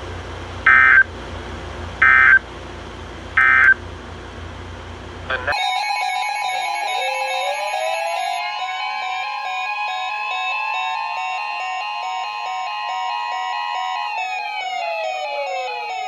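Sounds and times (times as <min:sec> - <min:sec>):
buzzing data bursts: 0:02.0 - 0:02.4, 0:03.4 - 0:03.8
radio hiss and hum: 0:02.0 - 0:02.4, 0:03.4 - 0:03.8, 0:05.2 - 0:05.6
electronic tones with falling glide: 0:05.4 - 0:16.0.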